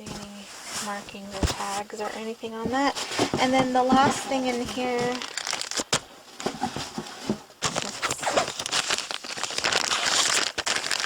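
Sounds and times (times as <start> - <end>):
packaging crinkling: 2.8 - 11.0.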